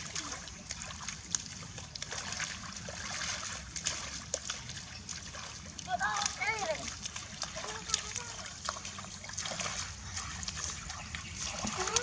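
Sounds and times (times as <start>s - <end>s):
water drips: 0.0s - 12.0s
water splashing and trickling: 0.0s - 12.0s.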